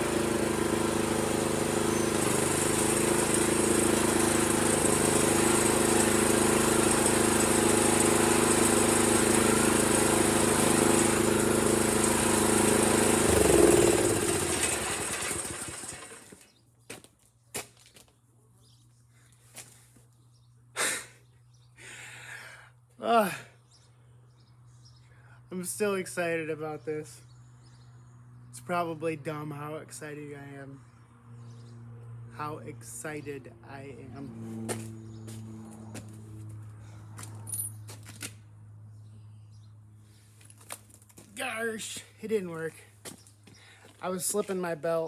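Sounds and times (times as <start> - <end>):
small engine running: 0.0 - 16.5, 34.0 - 38.3
bird chirps: 1.9 - 2.2.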